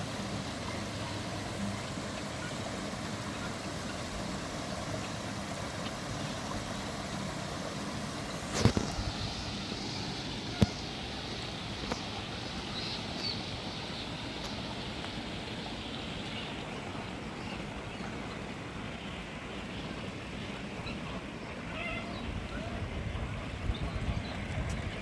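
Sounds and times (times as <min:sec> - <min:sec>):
birds calling: 0:08.6 - 0:22.8.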